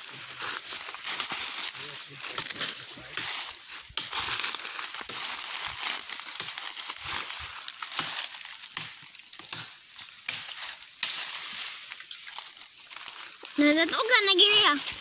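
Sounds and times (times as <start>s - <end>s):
branches cracking: 0.0s - 15.0s
dry leaves crunching and rustling: 0.0s - 15.0s.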